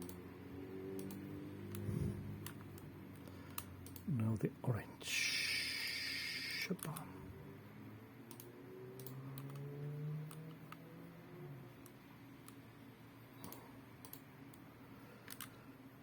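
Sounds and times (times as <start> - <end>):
computer mouse clicks: 0.0 - 0.2, 0.9 - 4.1, 6.8 - 7.1, 8.3 - 10.8, 11.8 - 12.6, 13.4 - 15.6
low steady hum: 0.0 - 16.0.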